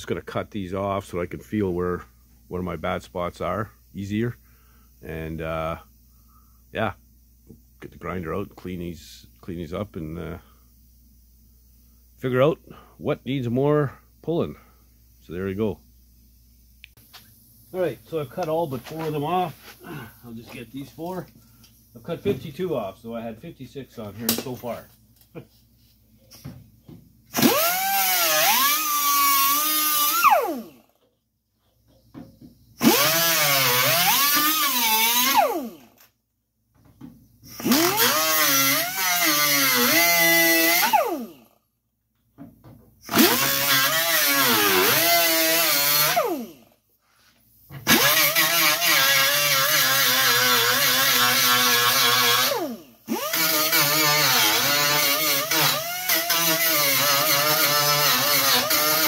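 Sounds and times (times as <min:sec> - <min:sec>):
angle grinder cutting metal: 0:27.3 - 0:30.8, 0:32.8 - 0:35.8, 0:37.5 - 0:41.4, 0:43.1 - 0:46.6, 0:47.8 - 0:59.0.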